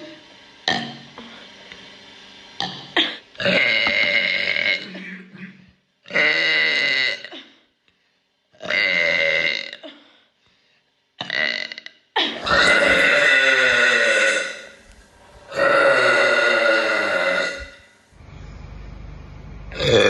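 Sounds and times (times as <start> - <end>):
person belching: 2.6 - 7.4, 8.6 - 9.8, 11.2 - 14.8, 15.5 - 17.9, 19.7 - 20.0.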